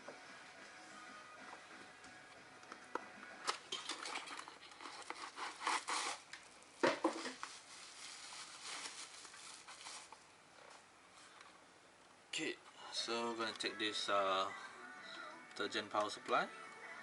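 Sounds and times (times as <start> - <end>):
plastic wrapping crinkling: 3.7 - 10.3.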